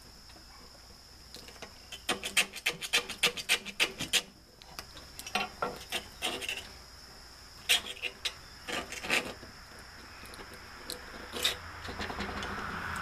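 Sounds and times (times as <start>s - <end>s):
screwdriver scraping silicone: 7.7s - 9.4s.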